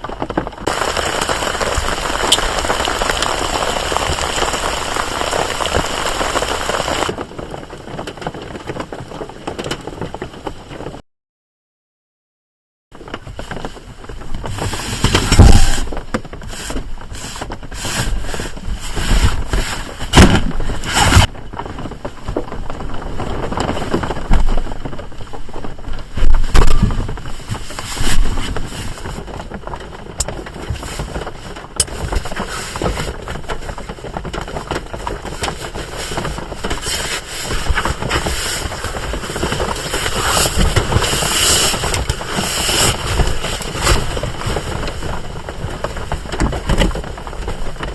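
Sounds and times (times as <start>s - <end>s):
rain falling on a van: 0.0s - 11.0s, 13.0s - 47.9s
knocks and bumps inside van: 13.0s - 47.9s.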